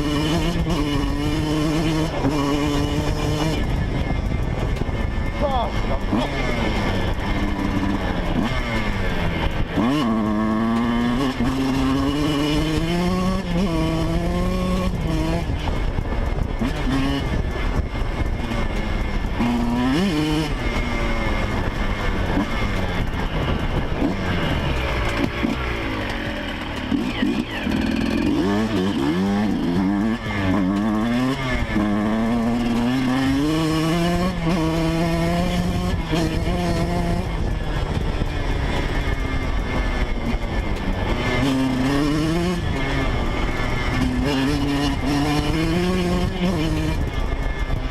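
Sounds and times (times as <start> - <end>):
motorcycle engine revving: 0.0 - 47.9.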